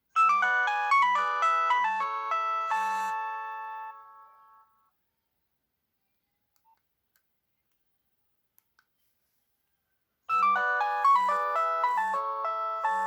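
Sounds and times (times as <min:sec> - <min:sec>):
electronic phone ringtone melody: 0:00.2 - 0:04.6, 0:10.3 - 0:13.0.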